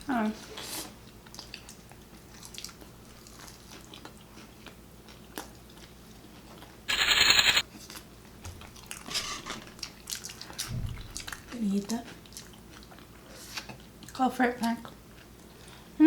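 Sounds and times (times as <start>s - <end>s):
quiet chewing: 9.7s - 15.9s.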